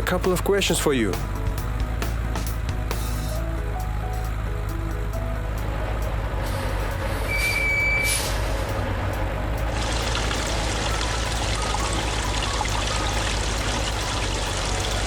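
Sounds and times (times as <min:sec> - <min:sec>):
brakes hissing and squealing: 0:00.0 - 0:15.0
water spraying: 0:09.6 - 0:15.0.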